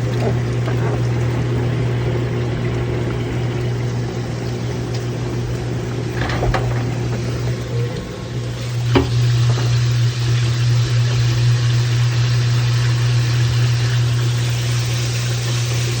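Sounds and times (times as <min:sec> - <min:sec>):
washing machine running: 0:00.0 - 0:16.0
rough gritty grinding noise: 0:06.1 - 0:07.4
machine knock: 0:08.9 - 0:09.2.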